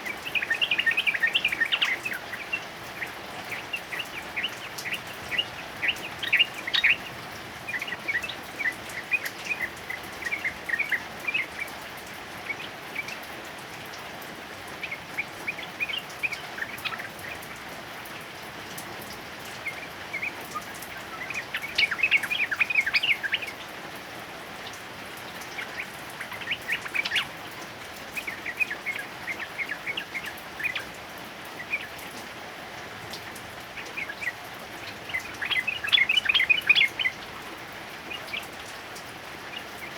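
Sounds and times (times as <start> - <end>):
bird singing rapid notes: 0.0 - 11.7, 19.5 - 23.6, 25.4 - 31.0, 33.2 - 37.3.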